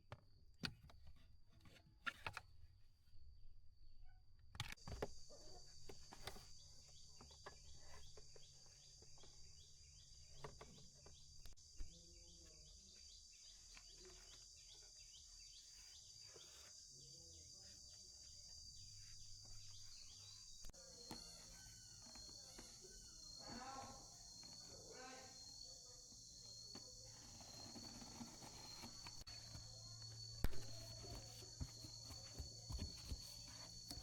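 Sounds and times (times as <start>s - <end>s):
insects chirring: 4.8s - 34.0s.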